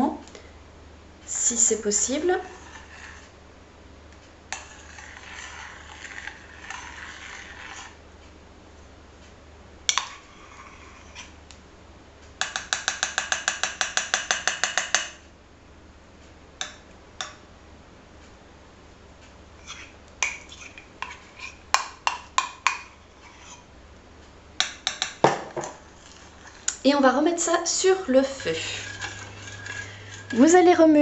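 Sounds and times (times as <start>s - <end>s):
soft scraping: 2.3s - 3.4s, 4.6s - 8.0s, 10.0s - 11.4s, 19.6s - 21.6s, 25.7s - 26.8s, 28.0s - 30.9s.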